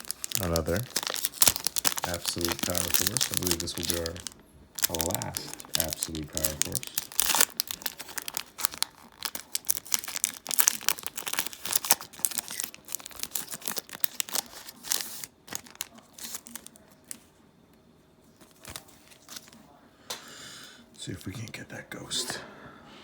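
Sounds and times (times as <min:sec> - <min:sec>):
foil wrapper tearing and crinkling: 0:00.0 - 0:17.2
faint handling sounds: 0:00.0 - 0:20.2.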